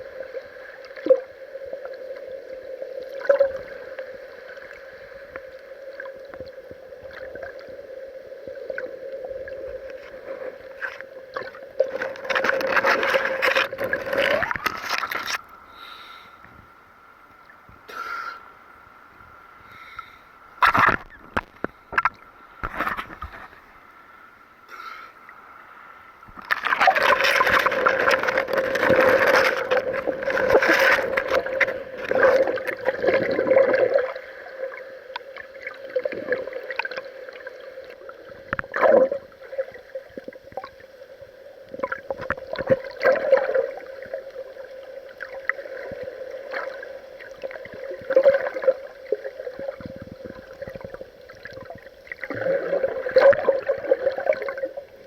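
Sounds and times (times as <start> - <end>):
water sloshing and gurgling: 0.0 - 15.4, 20.6 - 23.9, 26.2 - 55.0
water splashes: 8.6 - 15.4, 26.3 - 40.8, 41.7 - 55.0.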